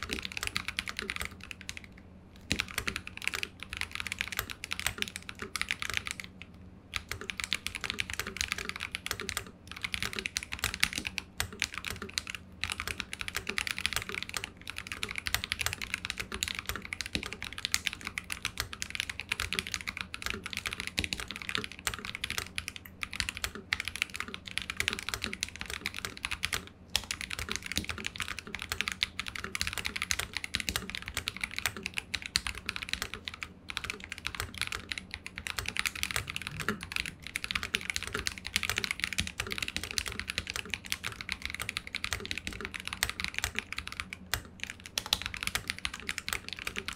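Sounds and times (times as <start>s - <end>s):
typing on mechanical keyboard: 0.0s - 46.9s.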